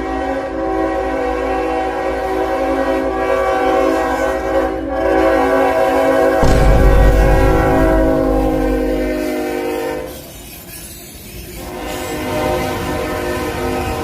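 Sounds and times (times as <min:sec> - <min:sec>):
locomotive horn chord: 0:03.1 - 0:10.1
passing train rumble: 0:06.2 - 0:10.2.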